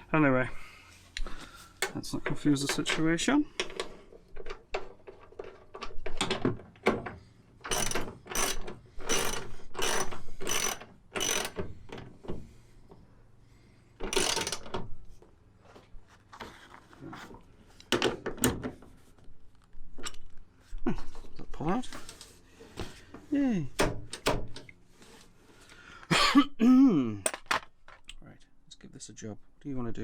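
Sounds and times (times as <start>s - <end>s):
ratchet wrench clicking: 7.7s - 11.6s, 14.0s - 14.7s.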